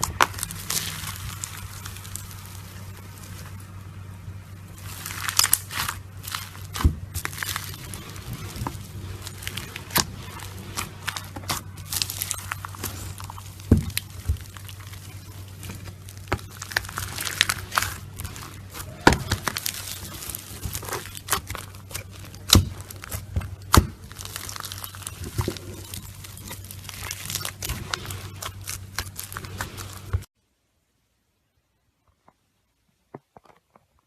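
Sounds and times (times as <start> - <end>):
slime crackling and popping: 0.0 - 30.3.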